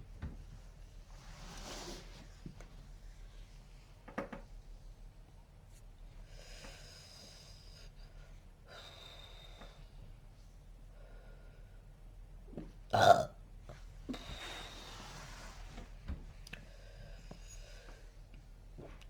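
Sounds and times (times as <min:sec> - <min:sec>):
person hiccuping: 0:13.0 - 0:13.3.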